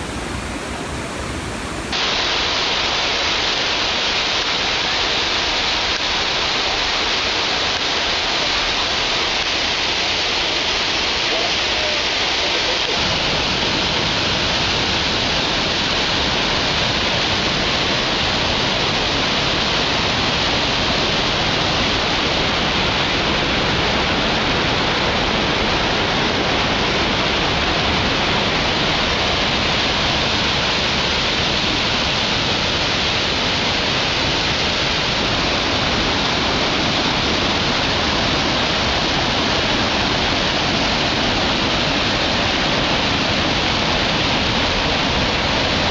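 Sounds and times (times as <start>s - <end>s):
waterfall roaring: 0.0s - 2.2s, 33.0s - 45.9s.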